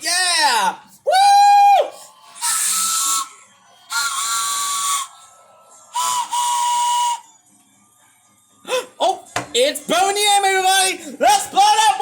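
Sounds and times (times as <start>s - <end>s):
toy train whistle blasts: 2.3s - 5.2s, 5.9s - 7.3s.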